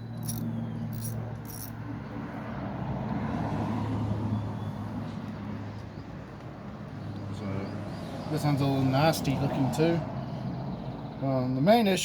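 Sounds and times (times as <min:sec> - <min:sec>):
vehicle passing: 0:00.0 - 0:05.7
tools clicking on metal: 0:00.1 - 0:01.7.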